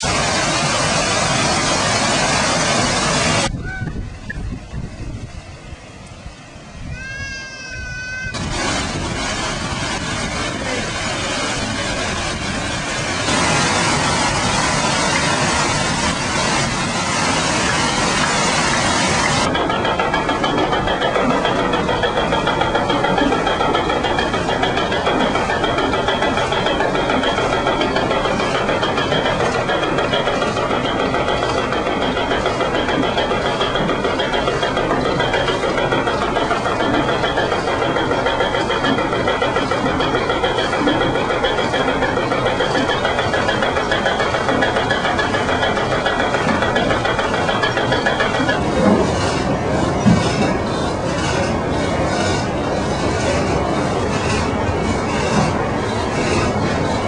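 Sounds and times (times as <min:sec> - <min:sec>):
sawmill machinery running: 0:00.0 - 0:03.6, 0:04.8 - 0:57.0
fast rhythmic knocking: 0:11.4 - 0:57.0.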